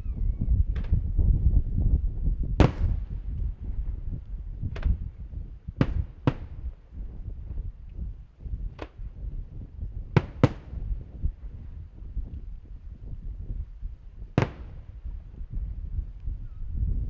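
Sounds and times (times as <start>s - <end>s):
firework shells bursting: 2.6s - 4.0s, 5.7s - 6.9s, 10.2s - 11.6s, 14.4s - 15.1s.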